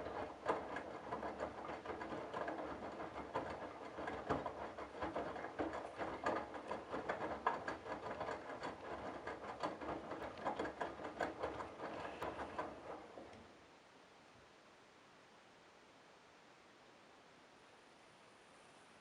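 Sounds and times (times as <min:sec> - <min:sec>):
washing machine drum tumbling: 0:00.0 - 0:13.3.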